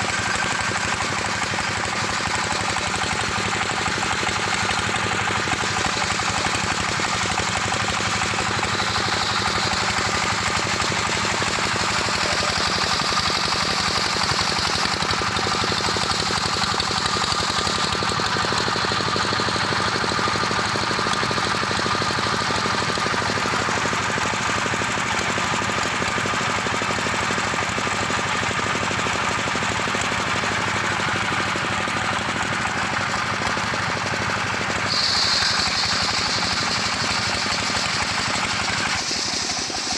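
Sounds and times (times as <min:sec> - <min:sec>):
sawmill engine knocking: 0:00.0 - 0:39.9
saw hissing: 0:04.3 - 0:14.8, 0:34.8 - 0:39.9.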